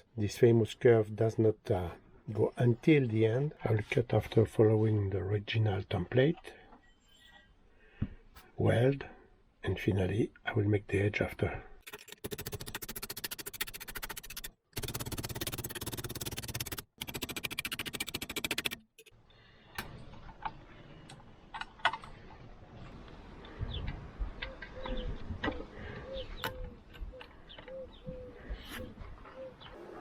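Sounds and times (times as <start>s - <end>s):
dove cooing: 24.5s - 30.0s.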